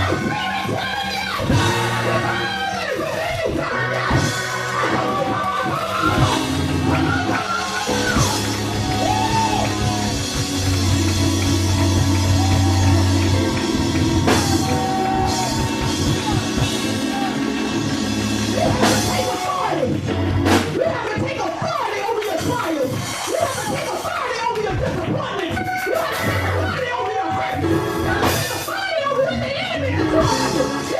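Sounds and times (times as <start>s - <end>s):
voices over music: 0.0s - 20.0s
drum kit: 0.0s - 29.0s
live church band playing: 0.0s - 30.9s
held bass notes: 3.8s - 20.8s.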